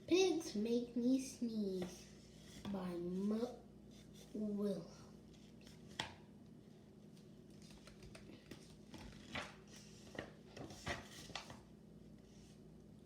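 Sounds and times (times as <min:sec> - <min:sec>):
faint steady hum: 0:00.0 - 0:13.0
paper rustling: 0:07.5 - 0:11.7.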